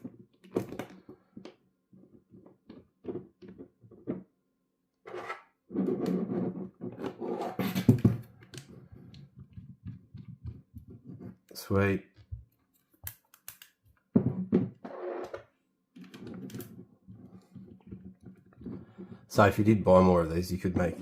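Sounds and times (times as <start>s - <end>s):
rubbing and knocking: 5.2s - 11.5s, 16.1s - 21.0s.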